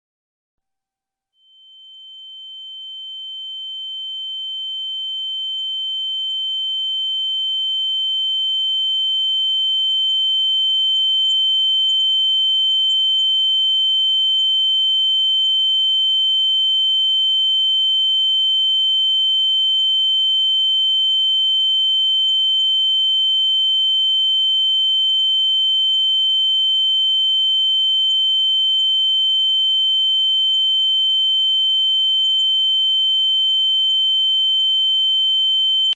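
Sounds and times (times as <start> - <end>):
high-pitched sine tone: 1.4 - 22.8, 25.6 - 35.9.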